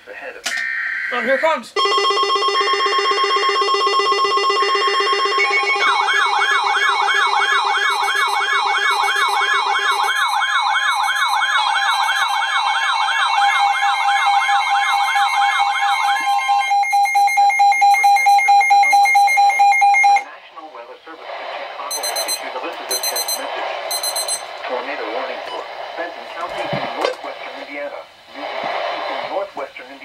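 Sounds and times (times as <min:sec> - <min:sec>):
warbling siren-like alarm: 0:00.6 - 0:20.3
alert data tone bursts: 0:00.9 - 0:20.3, 0:21.9 - 0:24.6
rapid beeping: 0:01.0 - 0:20.3, 0:21.8 - 0:26.5
pulsing beep: 0:01.1 - 0:20.3, 0:21.9 - 0:24.5
steady alert tone: 0:21.9 - 0:24.6.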